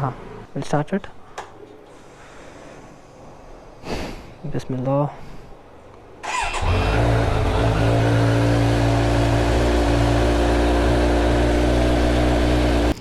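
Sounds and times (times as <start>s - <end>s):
motorcycle engine idling: 6.4s - 13.0s.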